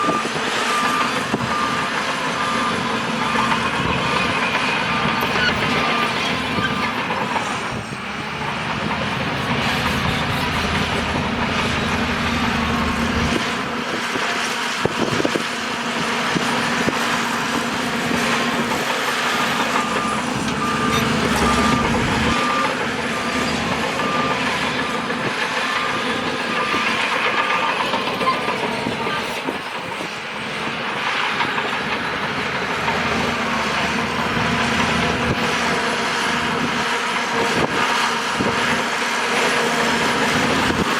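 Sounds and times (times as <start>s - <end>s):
reversing alarm beeping: 0.0s - 7.9s, 12.1s - 13.2s, 18.7s - 28.6s
bulldozer diesel engine running: 0.0s - 40.9s.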